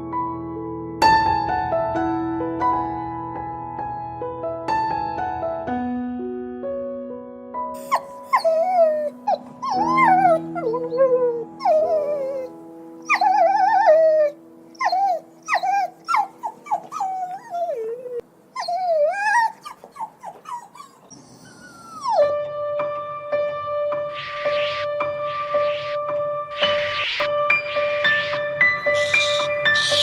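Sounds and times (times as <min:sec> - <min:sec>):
soft piano music: 0:00.0 - 0:30.0
animal whining calls: 0:07.8 - 0:22.3, 0:28.8 - 0:30.0.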